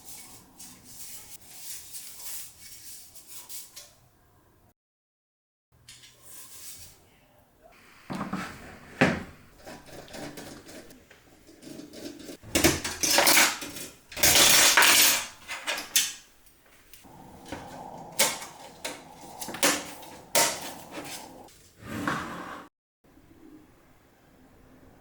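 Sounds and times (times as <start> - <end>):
computer parts clattering and rustling: 10.0 - 16.3.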